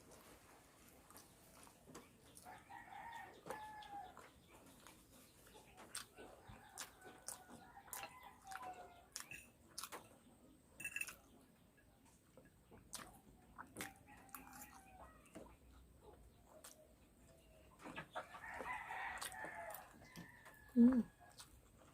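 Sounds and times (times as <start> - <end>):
person chewing noodles: 0.1 - 2.6, 4.7 - 10.1, 12.2 - 15.6, 16.2 - 17.4, 18.6 - 21.9
distant rooster crowing: 2.5 - 4.2, 18.4 - 21.3.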